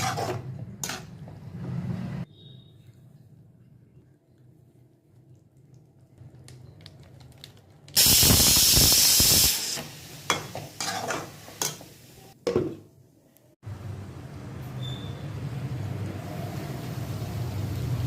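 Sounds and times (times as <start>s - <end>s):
food sizzling in hot oil: 8.0s - 12.4s.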